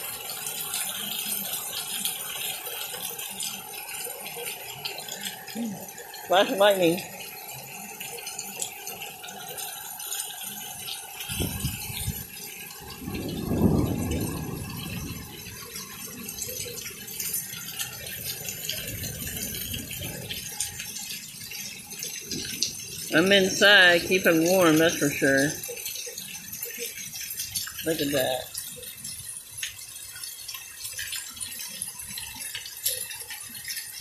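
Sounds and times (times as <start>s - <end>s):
heavy rain pattering: 0.0s - 34.0s
low rumble of thunder: 11.3s - 17.6s, 18.7s - 20.9s, 22.3s - 24.1s.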